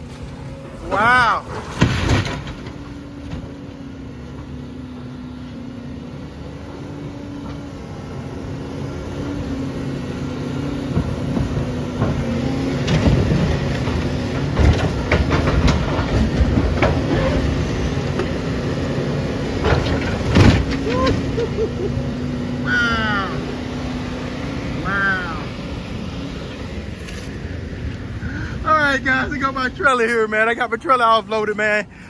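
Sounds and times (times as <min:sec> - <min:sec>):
excavator diesel engine droning: 0:00.0 - 0:32.0
metal bangs and crunches: 0:00.1 - 0:03.6, 0:10.9 - 0:21.6.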